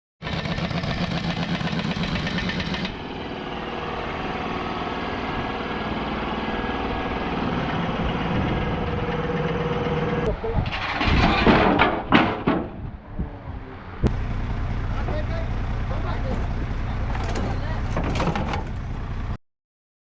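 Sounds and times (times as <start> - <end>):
engine running with pulsing sound: 0.2 - 13.1.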